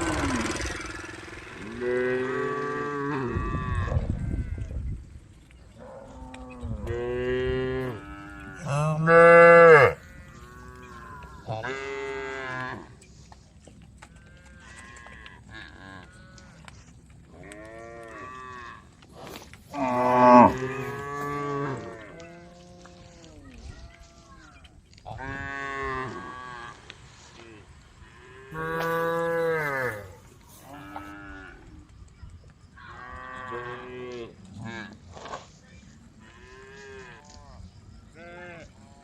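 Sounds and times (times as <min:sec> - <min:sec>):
cows mooing: 0:00.0 - 0:04.7, 0:05.8 - 0:13.0, 0:17.4 - 0:23.2, 0:28.2 - 0:31.6.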